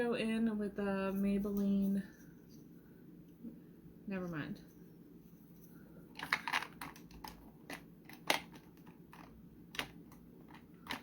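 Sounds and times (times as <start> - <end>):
plastic containers clicking: 6.2 - 11.0.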